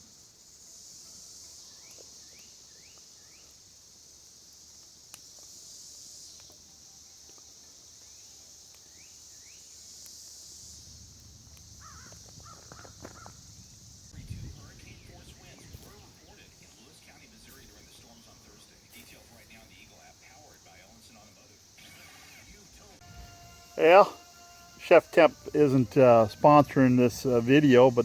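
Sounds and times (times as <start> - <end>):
insect chorus buzzing: 0.0 - 28.0.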